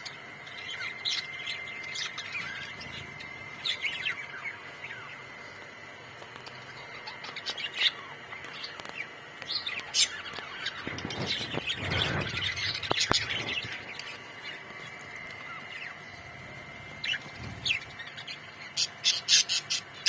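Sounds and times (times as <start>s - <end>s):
budgerigars chirping and warbling: 0.0s - 5.6s, 6.3s - 16.2s, 16.8s - 20.0s
bird squawks: 17.0s - 20.0s.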